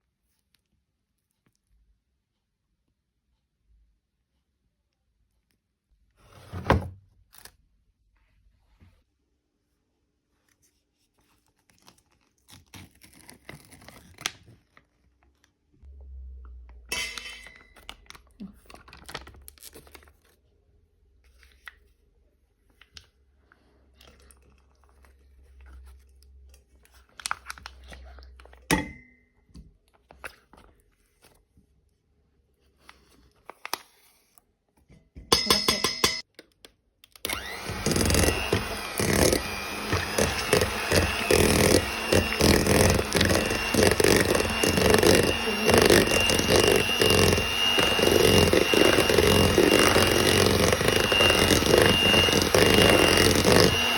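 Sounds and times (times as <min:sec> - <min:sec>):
kitchen handling sounds: 0:06.2 - 0:07.0, 0:34.9 - 0:36.2
electric hand mixer whining: 0:37.3 - 0:53.9
mixer beaters rattling: 0:37.4 - 0:53.9.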